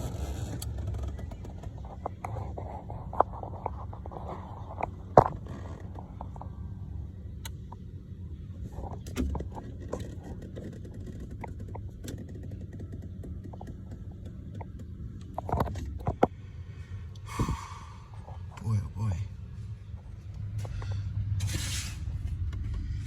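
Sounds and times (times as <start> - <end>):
steady low hum: 0.0 - 23.0
light clicks and knocks: 8.8 - 16.4.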